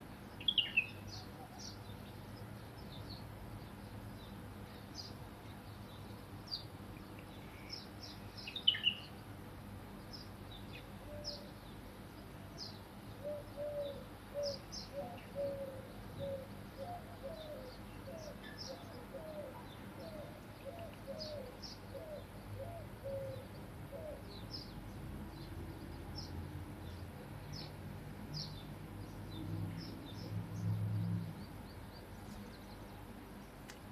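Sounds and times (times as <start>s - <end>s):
birds chirping: 0.0s - 33.9s
pigeon cooing: 13.2s - 24.4s.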